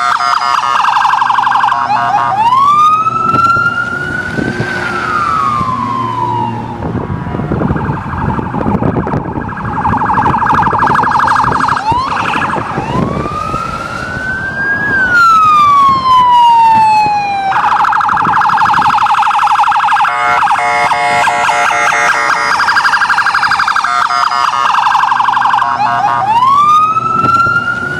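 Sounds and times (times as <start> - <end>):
police car siren: 0.0 - 27.9.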